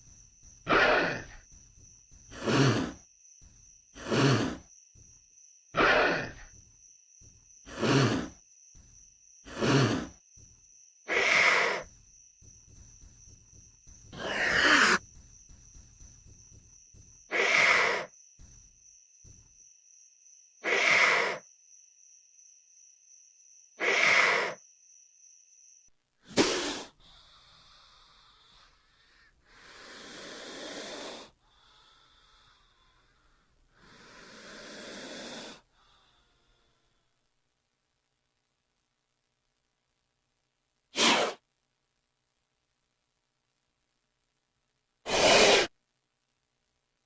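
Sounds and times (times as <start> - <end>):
breathy snake hisses: 2.3 - 3.0, 3.9 - 4.7, 7.7 - 8.4, 9.4 - 10.2, 14.2 - 15.0, 26.3 - 37.0, 41.0 - 41.4, 45.1 - 45.7.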